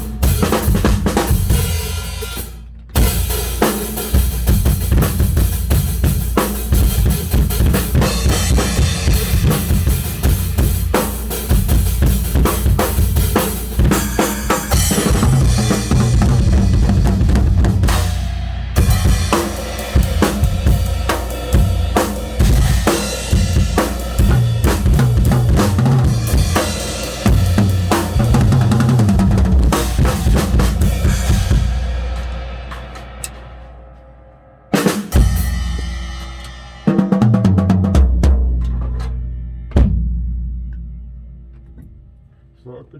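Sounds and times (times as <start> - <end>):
cymbals: 0.0 - 37.3
kick drum: 4.2 - 10.9, 27.2 - 33.6
snare drum and rimshots: 29.8 - 33.7.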